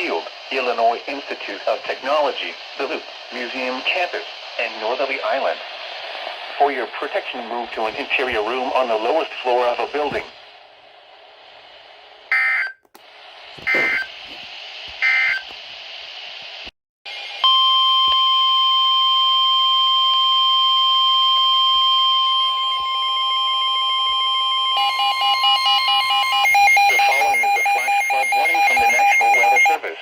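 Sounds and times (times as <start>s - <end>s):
steady warning alarm tone: 13.6s - 14.1s, 17.4s - 29.9s
warbling digital data tones: 24.8s - 29.8s.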